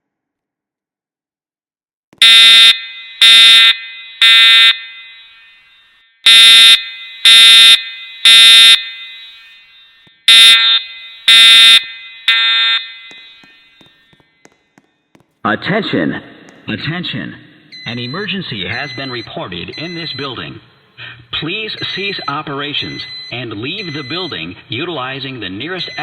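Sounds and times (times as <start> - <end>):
fire alarm horn blasts: 2.2 - 14.1.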